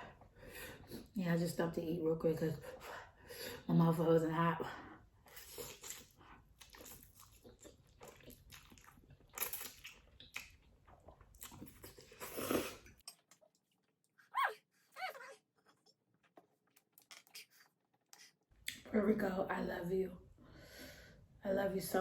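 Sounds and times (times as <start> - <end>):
person chewing with wet smacking: 5.2 - 14.2, 15.7 - 18.9.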